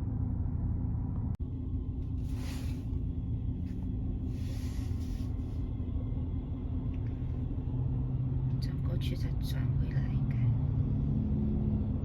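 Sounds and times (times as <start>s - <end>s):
car engines rumbling in traffic: 0.0s - 12.0s.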